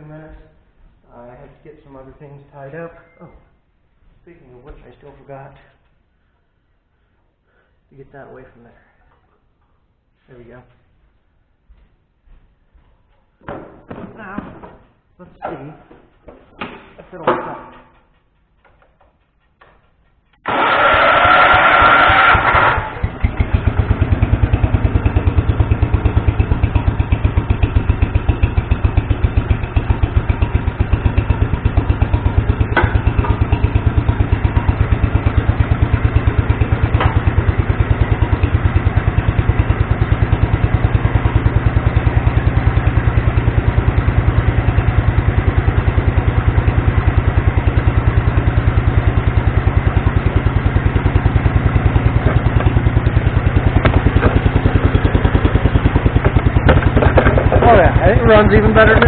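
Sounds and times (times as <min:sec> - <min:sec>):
single-cylinder engine running: 0:20.2 - 0:59.0.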